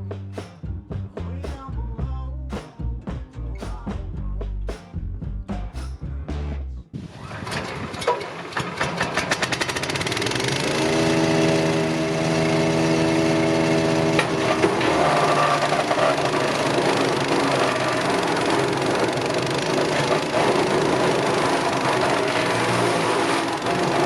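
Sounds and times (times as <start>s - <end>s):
background music: 0.0s - 7.0s
engine speeding up: 6.4s - 24.0s.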